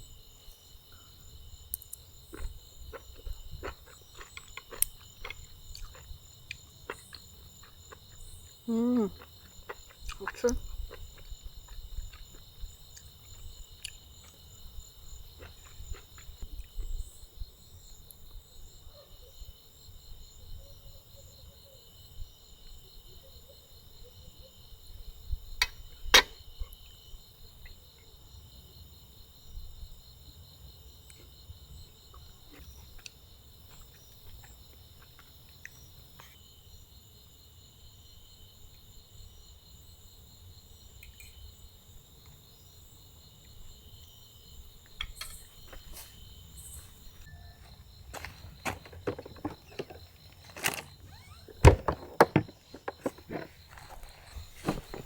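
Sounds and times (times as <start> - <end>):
insect trills: 0.0 - 18.8, 30.8 - 55.0.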